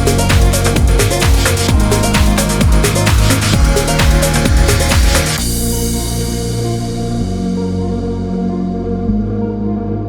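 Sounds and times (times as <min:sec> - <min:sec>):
electronic dance music: 0:00.0 - 0:07.5.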